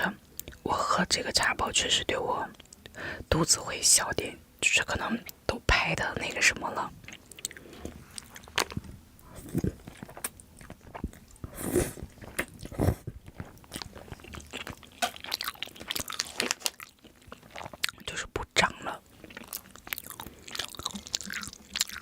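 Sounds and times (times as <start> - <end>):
person chewing and biting food: 7.0 - 18.0, 19.1 - 22.0.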